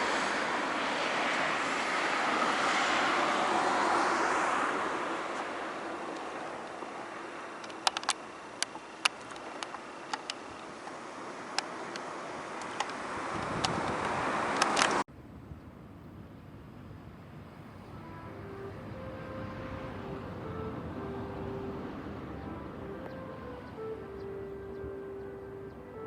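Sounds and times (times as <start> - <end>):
vehicles passing: 0.0 - 26.0
sharp clicks: 7.6 - 15.0.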